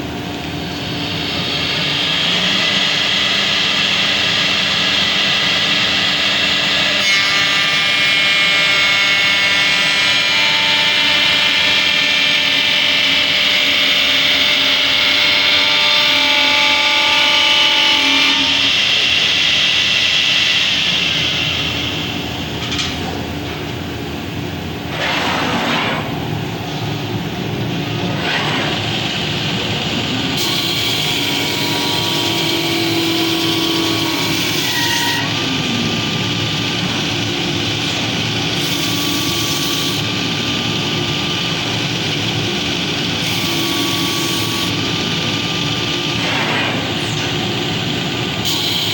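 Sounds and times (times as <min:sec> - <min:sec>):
wood lathe motor whine: 0:00.5 - 0:22.4, 0:28.9 - 0:46.2.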